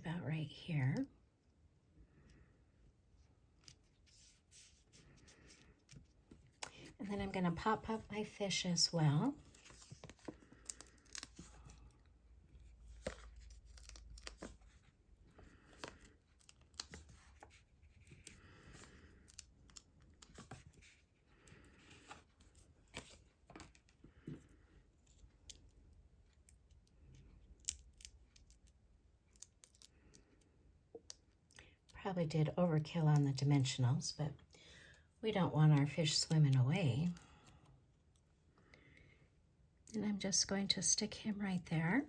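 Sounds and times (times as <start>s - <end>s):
paper rustling: 9.3s - 11.8s.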